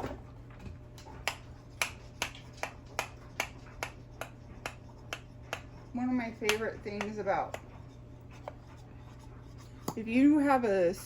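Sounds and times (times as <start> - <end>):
sharp evenly spaced taps: 1.2 - 5.7.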